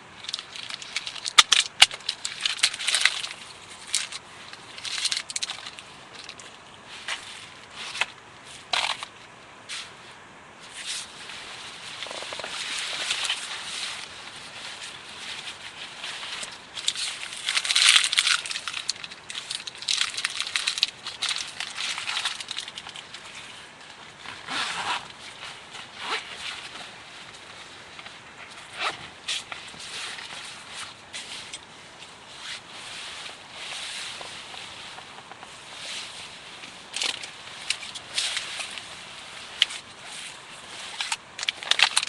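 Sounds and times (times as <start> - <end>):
clothing rustling: 9.7 - 42.0.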